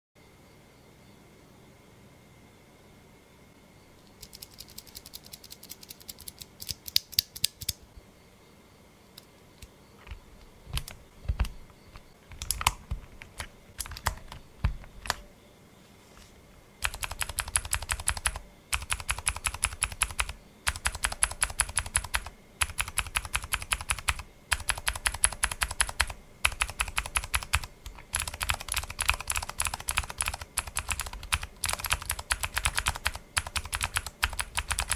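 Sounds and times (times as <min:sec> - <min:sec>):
clicky mechanical keyboard typing: 0:04.1 - 0:07.8, 0:10.0 - 0:15.2, 0:16.8 - 0:34.9.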